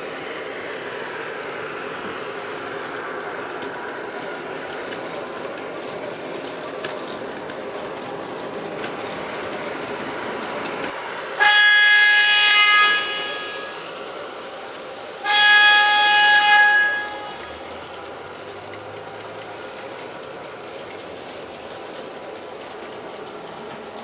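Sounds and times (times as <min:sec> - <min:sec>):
model train running on track: 0:00.0 - 0:24.0
subway car running sound: 0:00.0 - 0:24.0
train horn blast: 0:11.3 - 0:14.0, 0:15.2 - 0:17.6.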